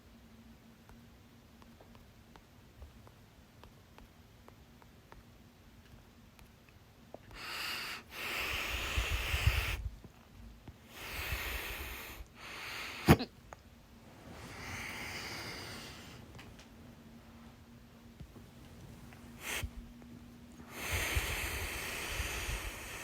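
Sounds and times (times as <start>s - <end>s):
person breathing noisily: 7.3s - 9.9s, 10.9s - 13.2s, 14.2s - 16.4s, 18.8s - 19.9s, 20.6s - 23.0s.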